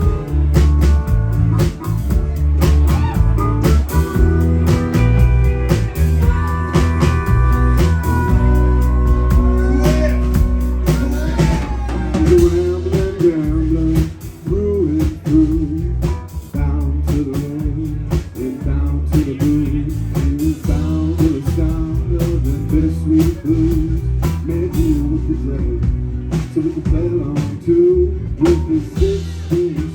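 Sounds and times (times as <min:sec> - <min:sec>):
live blues rock band: 0:00.0 - 0:29.9
person singing: 0:00.0 - 0:29.9.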